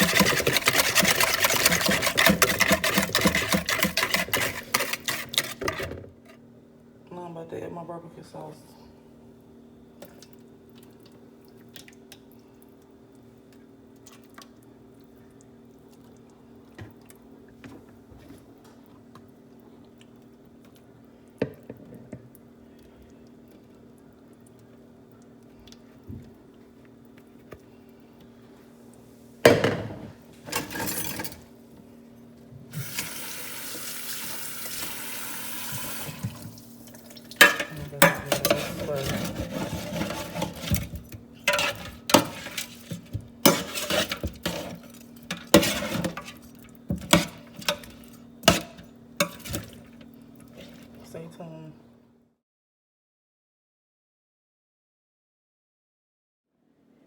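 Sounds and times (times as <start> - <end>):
water running from a tap: 32.7 - 37.4.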